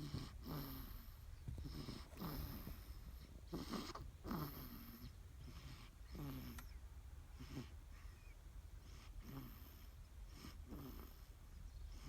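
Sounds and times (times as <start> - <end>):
newborn snoring: 0.0 - 6.8, 8.9 - 11.4
steady low hum: 0.0 - 12.0.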